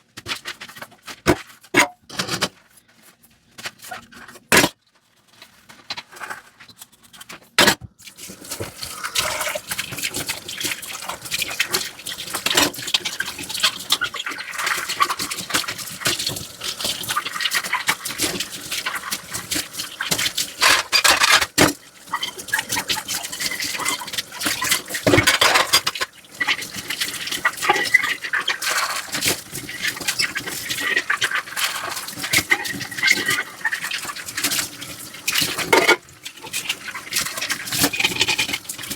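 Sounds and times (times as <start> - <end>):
dishes scrubbing and splashing: 8.0 - 38.9
running water: 8.0 - 38.9.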